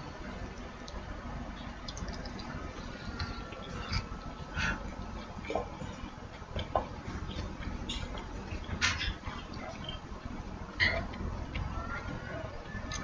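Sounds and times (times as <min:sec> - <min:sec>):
chewing clicks: 0:01.8 - 0:02.6.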